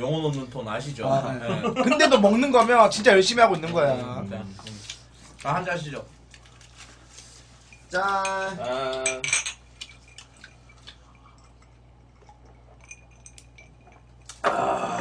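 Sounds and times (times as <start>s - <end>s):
dishes clinking: 7.7s - 14.4s
glasses clinking: 7.7s - 14.4s
breathy exclamation: 14.4s - 15.0s.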